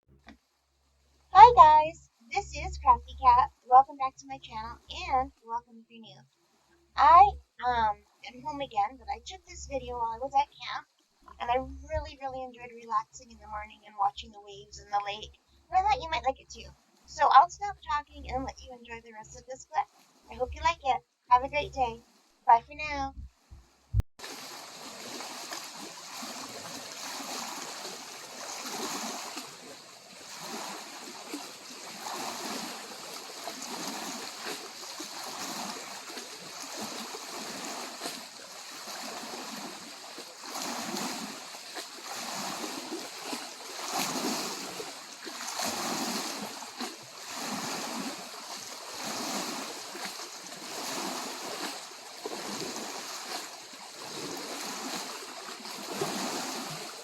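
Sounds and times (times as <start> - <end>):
lake waves lapping on shore: 24.2 - 57.0.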